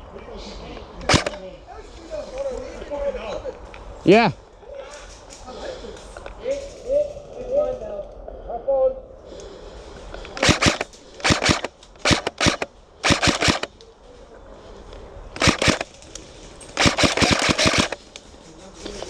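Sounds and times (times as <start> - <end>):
airsoft rifle bursts: 1.0 - 1.4, 10.3 - 13.7, 15.4 - 16.0, 16.8 - 18.0.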